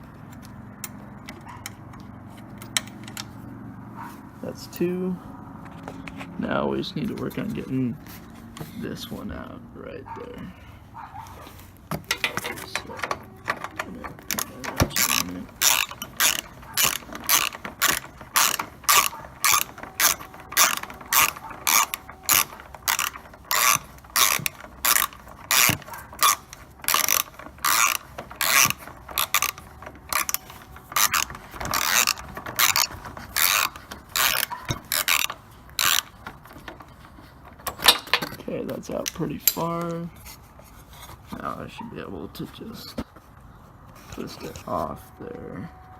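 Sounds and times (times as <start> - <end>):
ratchet wrench clicking: 11.9 - 38.4.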